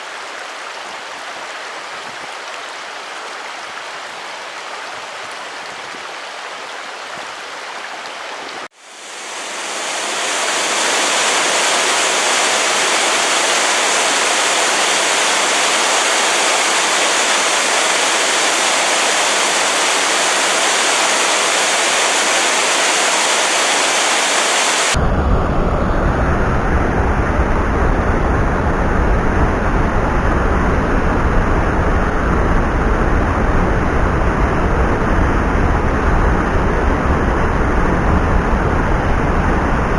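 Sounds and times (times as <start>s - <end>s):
mountain stream rushing: 0.0s - 25.0s
heavy low rumble: 25.0s - 39.9s.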